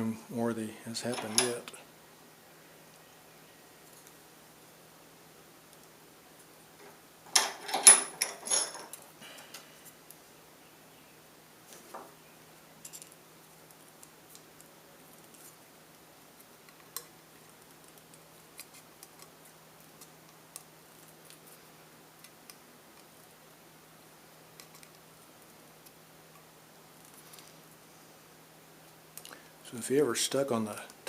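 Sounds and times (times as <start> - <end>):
faint steady hum: 0.0 - 31.0.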